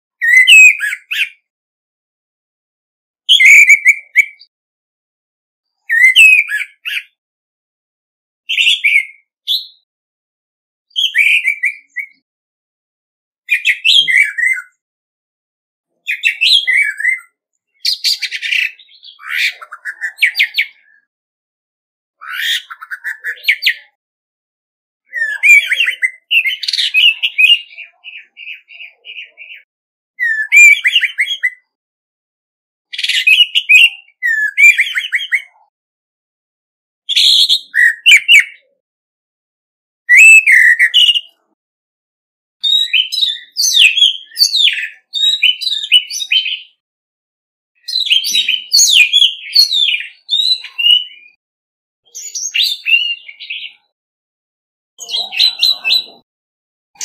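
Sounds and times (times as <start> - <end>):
thrush singing whistled phrases: 0.2 - 1.5, 3.3 - 4.5, 5.8 - 7.2, 8.5 - 9.9, 10.9 - 12.3, 13.5 - 14.8, 16.0 - 21.1, 22.2 - 24.0, 25.0 - 31.8, 32.9 - 35.7, 37.1 - 38.8, 40.1 - 41.5, 42.6 - 46.8, 47.8 - 51.4, 52.0 - 54.0.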